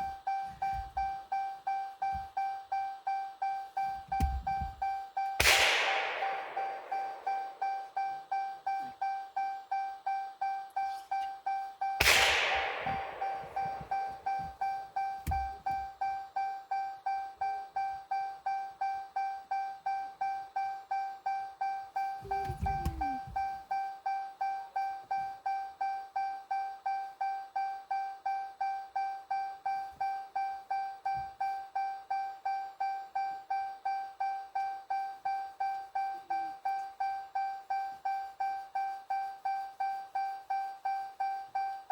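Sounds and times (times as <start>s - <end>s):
car door warning chime: 0.0s - 5.4s, 6.0s - 41.9s
gunshot with echo: 5.4s - 7.8s, 12.0s - 14.5s
low thump: 12.0s - 15.7s.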